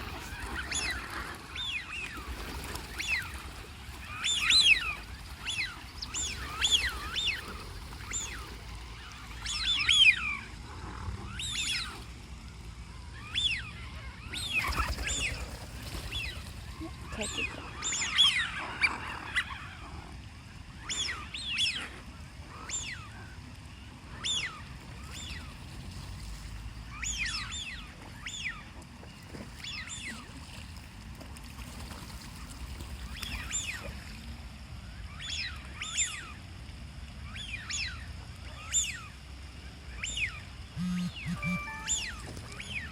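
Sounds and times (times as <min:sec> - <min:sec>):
ducks calling: 0:40.8 - 0:42.9.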